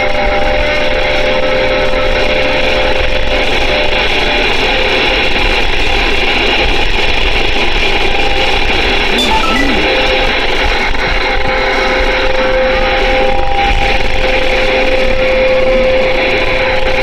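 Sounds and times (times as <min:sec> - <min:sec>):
thin whistle-like tone: 0:09.1 - 0:10.2.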